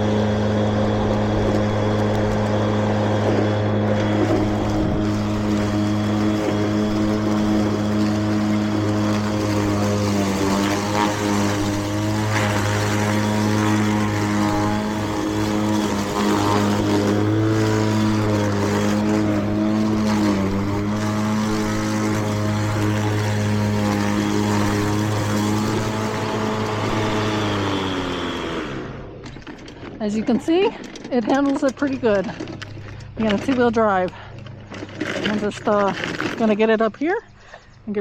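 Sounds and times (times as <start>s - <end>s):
electric mower motor hum: 0.0s - 37.2s.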